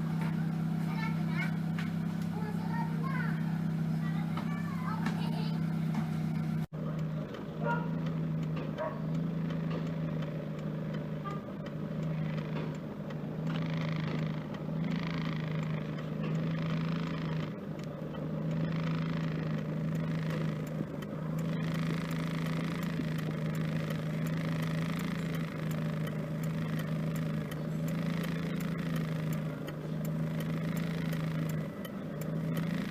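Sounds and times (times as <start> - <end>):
car engine idling: 0.0 - 32.9.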